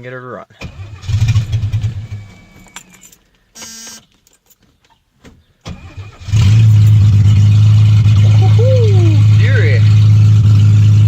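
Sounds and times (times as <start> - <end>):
engine cranking on starter: 0.6 - 3.2, 5.6 - 9.7
car engine idling loudly: 6.4 - 11.0.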